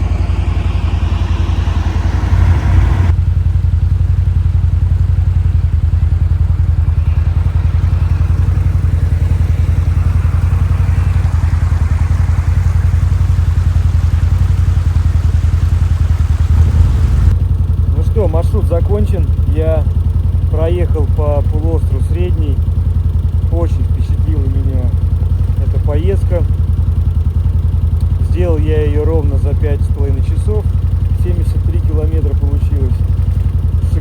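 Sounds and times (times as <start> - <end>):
atv engine running: 0.0 - 34.0.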